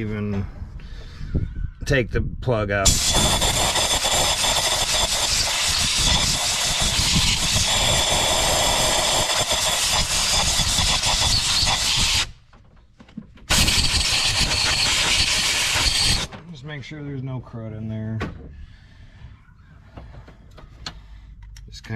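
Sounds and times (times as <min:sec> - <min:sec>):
compressed air hissing: 0:02.8 - 0:12.4, 0:13.5 - 0:16.3.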